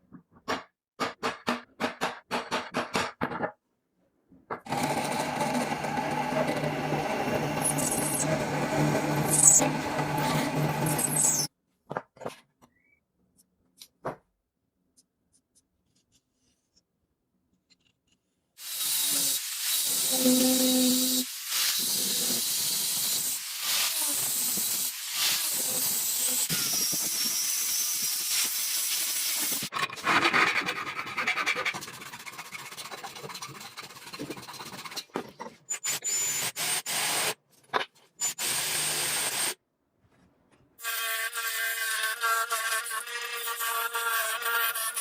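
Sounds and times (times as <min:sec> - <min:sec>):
file rubbing metal: 0:30.1 - 0:35.6.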